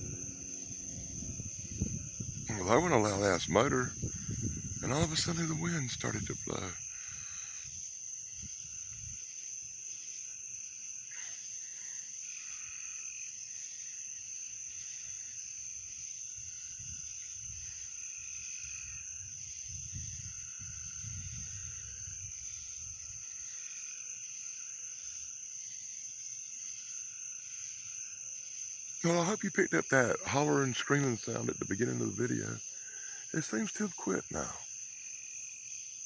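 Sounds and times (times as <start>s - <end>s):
frog calls: 0.0s - 7.7s, 29.0s - 34.6s
wind rumbling on microphone: 0.0s - 7.8s, 8.4s - 9.2s, 18.7s - 23.3s
high-pitched insect drone: 0.0s - 36.0s.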